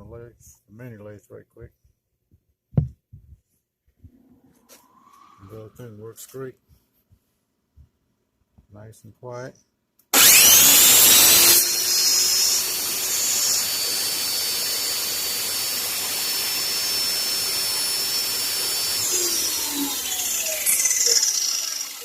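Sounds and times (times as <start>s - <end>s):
belt grinder running: 10.1s - 22.0s.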